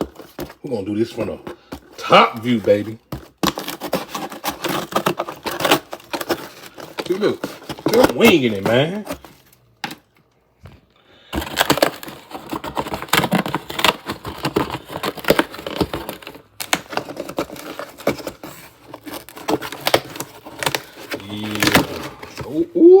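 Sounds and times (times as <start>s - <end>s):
cardboard box being unpacked: 0.0s - 10.0s, 11.2s - 22.8s.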